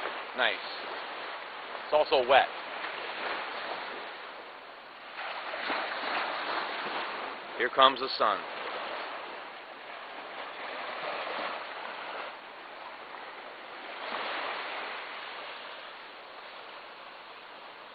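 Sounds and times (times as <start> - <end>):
small sea waves washing: 0.0 - 17.9.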